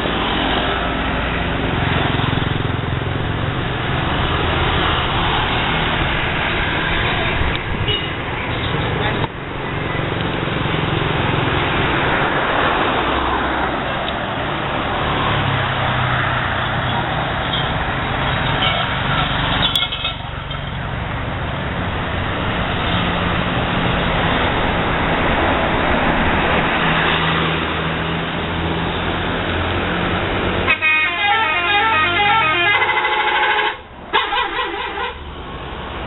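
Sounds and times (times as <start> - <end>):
bus engines and road noise: 0.0 - 36.0
musical multi-tone bus horn: 30.6 - 35.3.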